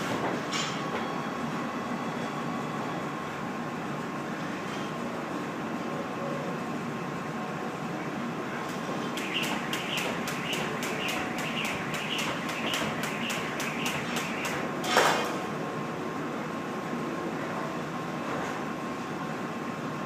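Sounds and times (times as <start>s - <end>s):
steady background hum: 0.0s - 20.0s
jump rope ticking and whirring: 8.7s - 15.2s
rope swish: 9.1s - 14.7s.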